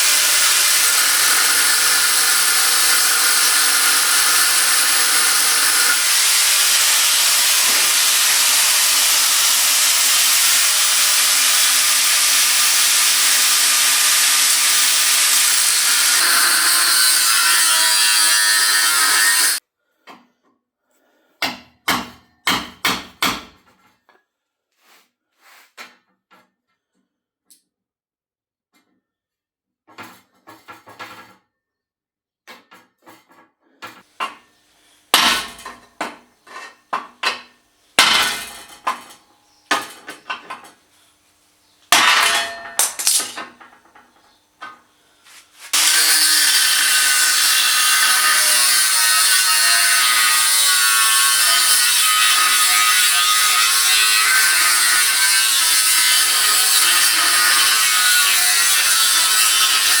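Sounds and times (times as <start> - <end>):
power tool cutting steel: 0.0 - 19.6, 38.0 - 40.2, 42.0 - 43.5, 45.3 - 60.0
steel and tools clanking: 0.0 - 19.6, 42.0 - 44.8.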